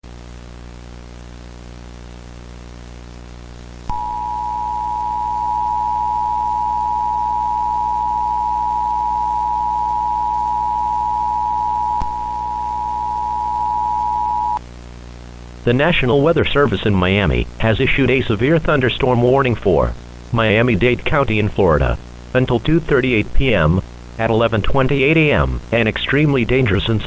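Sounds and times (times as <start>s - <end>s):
faint low buzzing hum: 0.0s - 27.0s
two-tone alarm signal: 3.9s - 14.6s
click: 12.0s - 12.2s.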